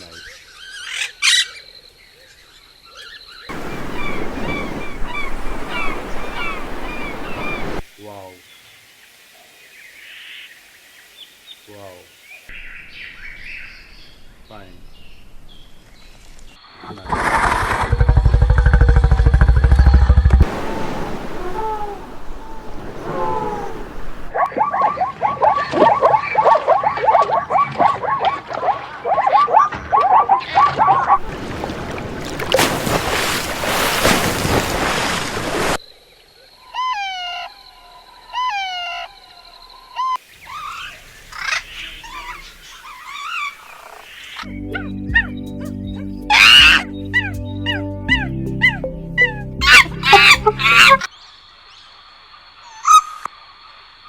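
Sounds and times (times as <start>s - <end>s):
animals calling: 0.0s - 7.9s, 20.4s - 31.4s, 36.6s - 51.2s
flock of birds calling: 3.5s - 7.8s, 20.4s - 24.4s, 40.0s - 44.5s.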